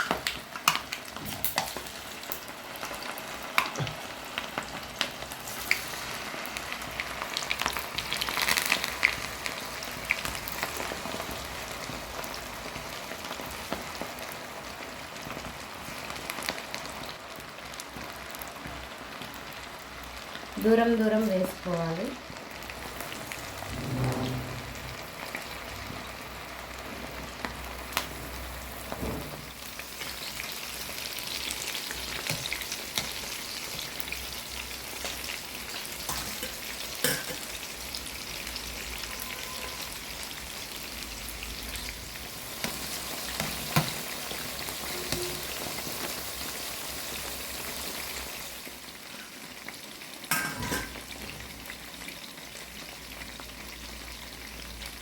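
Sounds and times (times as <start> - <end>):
batter deep-frying in oil: 0.0 - 55.0.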